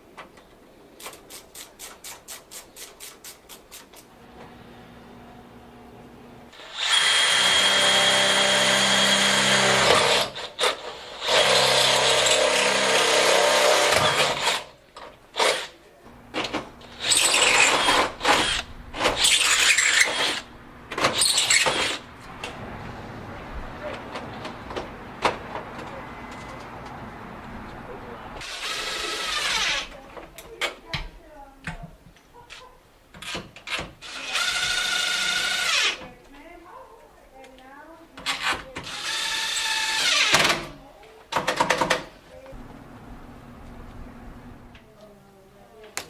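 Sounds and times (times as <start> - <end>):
power drill running: 4.1 - 14.7, 15.4 - 22.8, 28.4 - 29.9, 34.0 - 36.0, 38.9 - 40.4.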